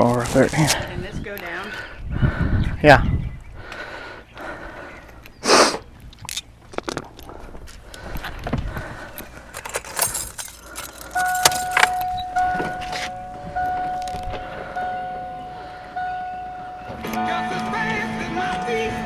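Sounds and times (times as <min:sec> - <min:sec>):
metal keys rattling: 0:09.2 - 0:17.2
car warning chime: 0:09.6 - 0:19.0
music: 0:16.6 - 0:19.0.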